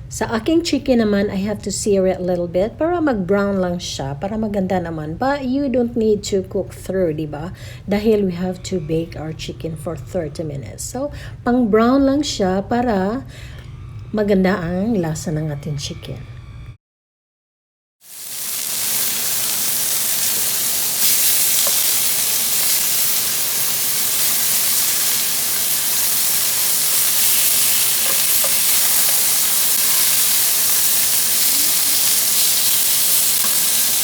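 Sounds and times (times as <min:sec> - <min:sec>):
chicken sizzling in frying pan: 0:18.0 - 0:34.0.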